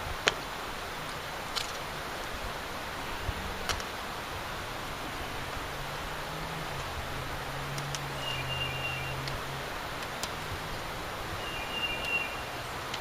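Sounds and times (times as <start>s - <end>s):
outdoor background hiss: 0.0s - 13.0s
faint clicks: 7.7s - 8.1s.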